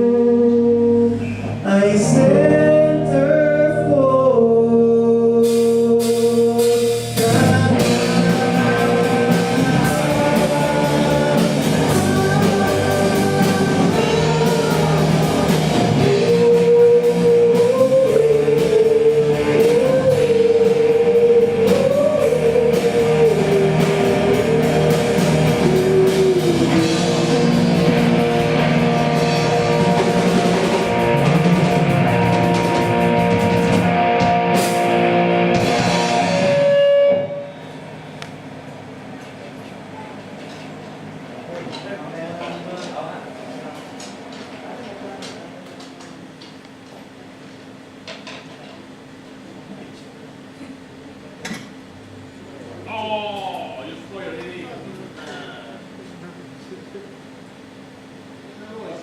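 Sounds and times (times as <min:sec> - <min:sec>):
live rock band playing: 0:00.0 - 0:38.1
wavering lead guitar melody: 0:07.2 - 0:37.6.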